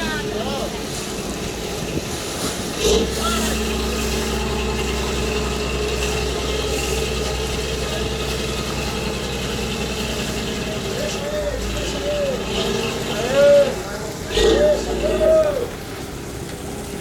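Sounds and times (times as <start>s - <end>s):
boat engine humming: 0.0s - 17.0s.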